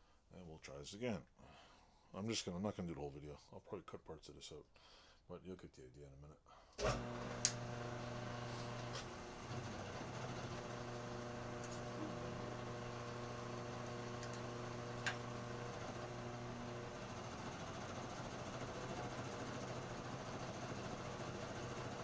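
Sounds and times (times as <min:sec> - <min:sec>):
milling machine motor humming: 0:06.8 - 0:22.0.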